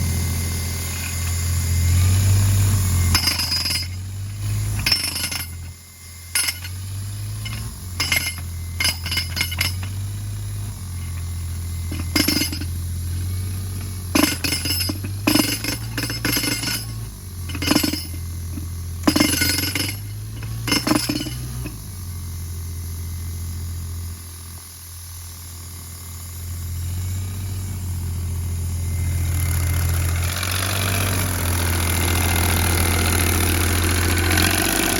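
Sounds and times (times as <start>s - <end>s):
compressor engine idling: 0.0s - 22.5s, 27.6s - 34.9s
metallic clinks and knocks: 3.1s - 4.0s, 4.7s - 10.2s, 11.8s - 12.8s, 13.7s - 21.9s.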